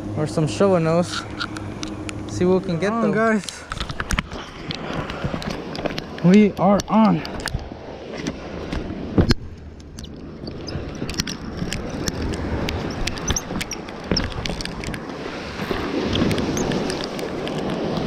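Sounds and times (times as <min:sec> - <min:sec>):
ocean surf: 0:00.0 - 0:18.0
wind on microphone: 0:00.0 - 0:18.0
sharp light clicks and knocks: 0:03.4 - 0:15.1.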